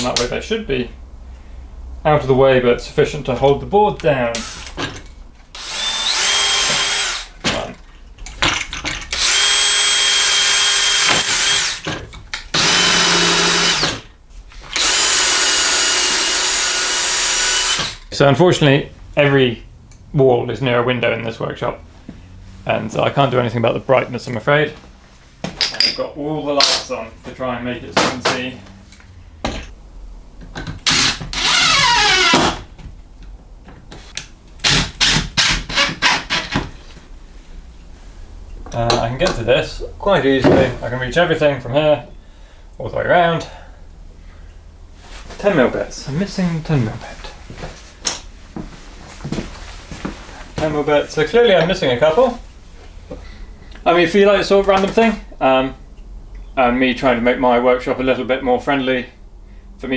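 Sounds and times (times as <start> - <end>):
electric drill running: 4.4 - 4.8, 5.5 - 7.4, 9.1 - 11.8, 12.5 - 14.1, 14.7 - 18.1, 30.8 - 32.6
tools clattering: 7.4 - 9.2, 25.4 - 27.0, 28.0 - 29.8.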